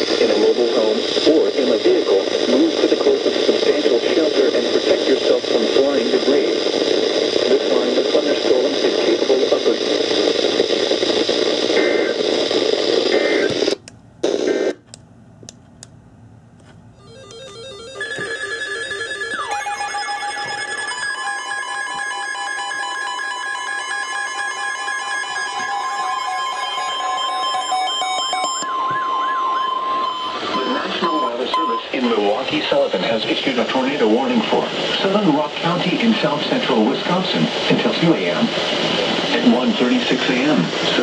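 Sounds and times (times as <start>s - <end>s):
hissing radio static: 0.0s - 14.8s, 28.6s - 41.0s
repeating electronic tones: 17.0s - 32.1s.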